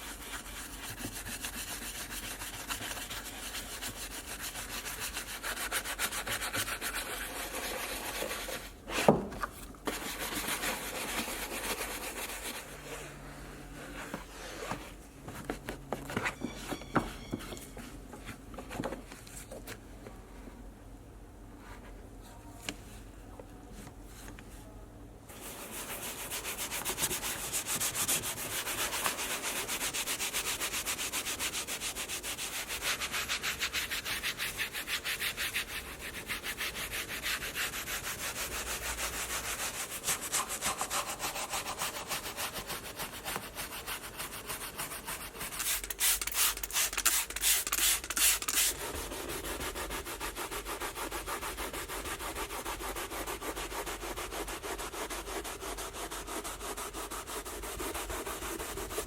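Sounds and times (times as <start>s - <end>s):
hand scrubbing car surface: 25.4s - 59.0s.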